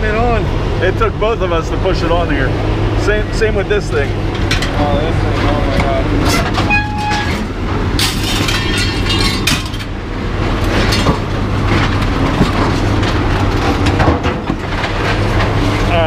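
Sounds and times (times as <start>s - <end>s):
steady low hum: 0.0s - 16.0s
scrap metal scraping and clanking: 3.9s - 16.0s
metal clatters: 4.3s - 10.0s, 10.6s - 16.0s.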